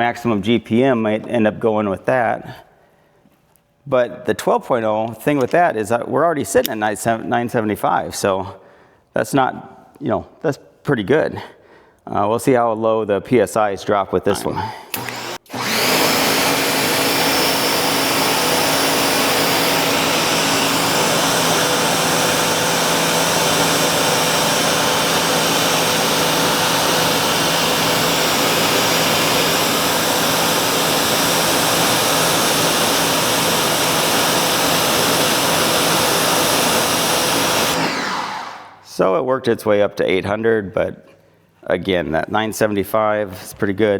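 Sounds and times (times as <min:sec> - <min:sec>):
pressure washer motor hum: 0:14.5 - 0:38.8.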